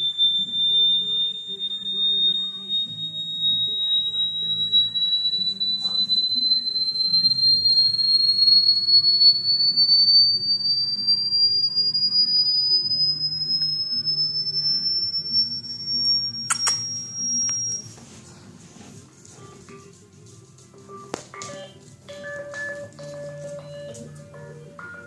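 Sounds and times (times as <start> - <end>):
rising electronic whistle tone: 0.0 - 17.9
brief click: 16.5 - 17.6.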